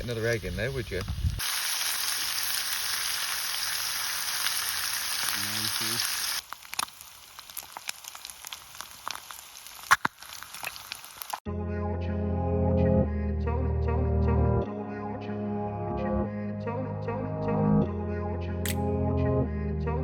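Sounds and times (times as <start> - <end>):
food sizzling in a pan: 0.0 - 11.4.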